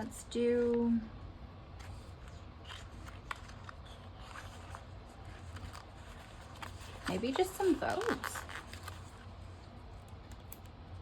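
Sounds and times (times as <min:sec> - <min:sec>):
steady low hum: 0:00.0 - 0:11.0
paper rustling: 0:01.8 - 0:09.3.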